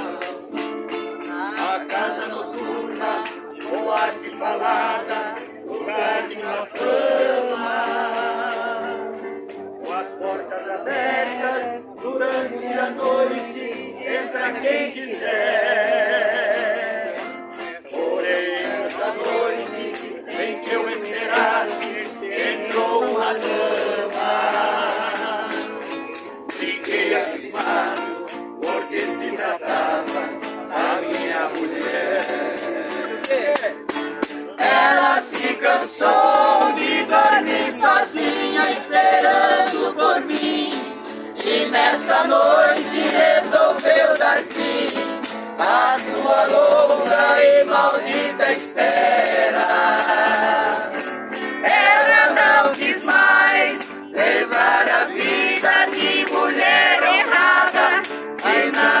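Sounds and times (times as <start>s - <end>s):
voices singing: 0.0s - 59.0s
fast shaker rhythm: 17.9s - 59.0s.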